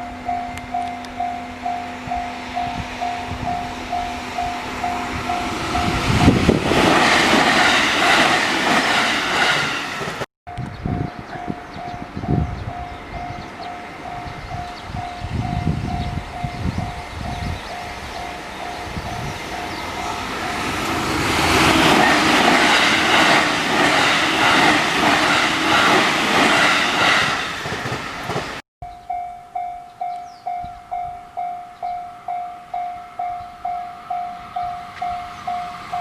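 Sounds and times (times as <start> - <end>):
level crossing warning bell ringing: 0.0 - 6.5, 10.5 - 21.2, 28.8 - 36.0
train passing: 0.0 - 36.0.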